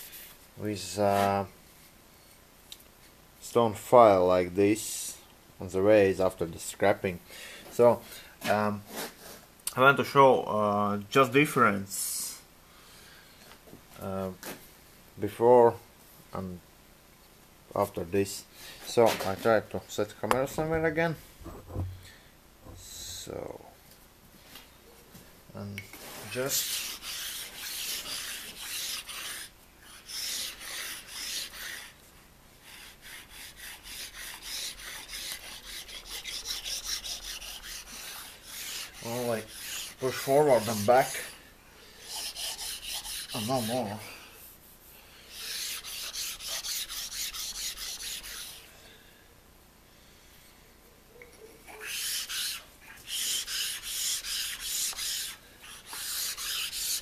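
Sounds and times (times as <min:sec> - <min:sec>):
stone file rasping on metal: 0:26.4 - 0:32.0, 0:32.6 - 0:41.3, 0:42.1 - 0:44.0, 0:45.3 - 0:48.6, 0:51.8 - 0:57.0
stone file scraping on cast iron: 0:51.8 - 0:57.0.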